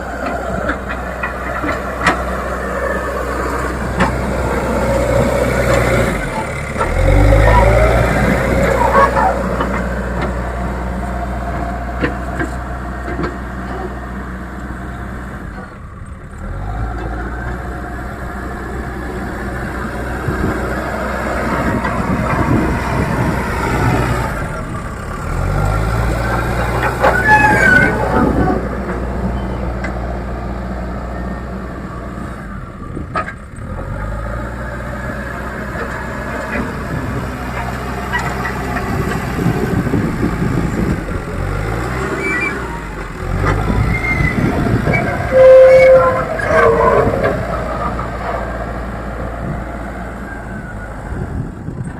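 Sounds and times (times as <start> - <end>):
diesel engine running under load: 0.0 - 51.9
brief high squeak: 45.0 - 47.2.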